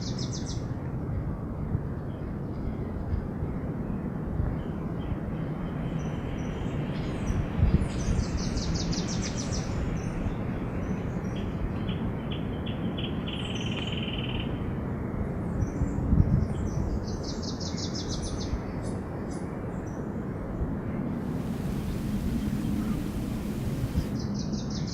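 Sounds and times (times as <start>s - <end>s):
background hiss: 21.1s - 24.2s
low buzzy bird trill: 21.2s - 24.2s
small birds trilling: 21.3s - 24.5s.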